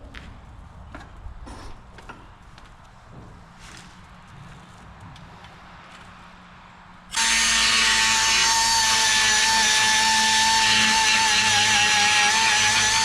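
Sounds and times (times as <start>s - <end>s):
die grinder high whine: 7.1s - 13.0s.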